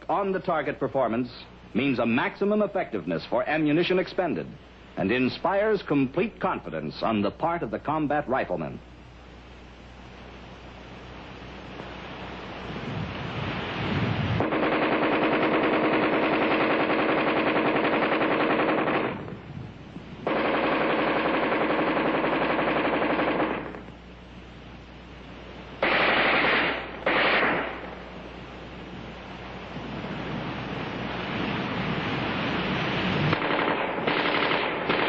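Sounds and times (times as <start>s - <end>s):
rifle firing automatic bursts: 14.4s - 19.3s, 20.3s - 23.9s, 25.8s - 28.0s, 33.3s - 35.0s.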